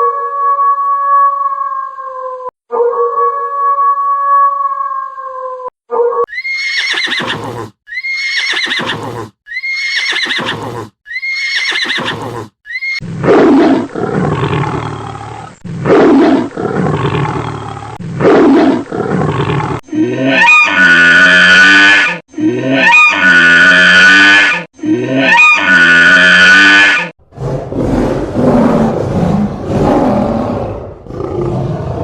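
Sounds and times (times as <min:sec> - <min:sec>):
horse neighing: 0:06.3 - 0:13.0.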